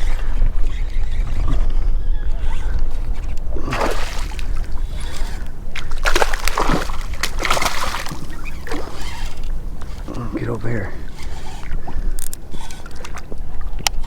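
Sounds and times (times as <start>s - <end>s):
fish splashing in water: 3.5s - 10.7s.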